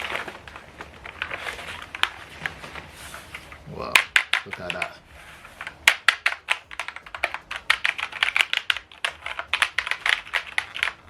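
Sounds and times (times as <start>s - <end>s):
mechanical keyboard typing: 3.3s - 5.0s, 5.6s - 11.0s.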